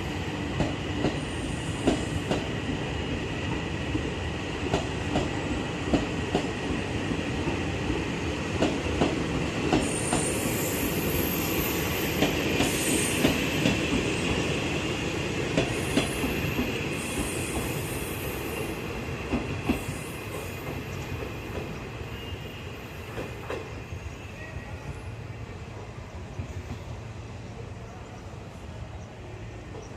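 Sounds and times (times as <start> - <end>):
train wheels clicking over rail joints: 0.6 - 2.9, 4.6 - 6.8, 8.6 - 10.6, 15.4 - 17.9, 18.5 - 21.8.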